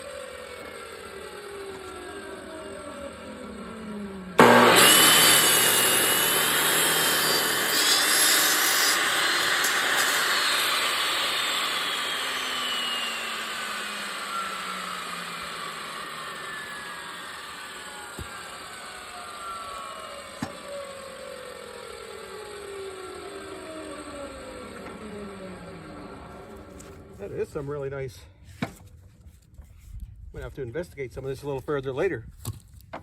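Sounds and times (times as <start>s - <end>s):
saw motor winding down: 0.0s - 27.6s
chop saw cutting branch: 4.4s - 21.6s.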